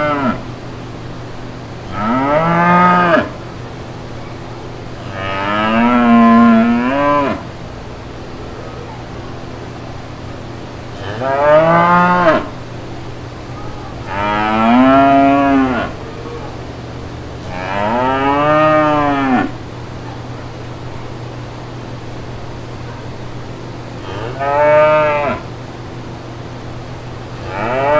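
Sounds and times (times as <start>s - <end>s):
cattle mooing: 0.0s - 0.5s, 1.9s - 3.4s, 5.0s - 7.6s, 10.9s - 12.6s, 13.6s - 16.7s, 17.4s - 20.6s, 24.0s - 25.5s, 27.4s - 27.9s
steady low hum: 0.0s - 27.9s.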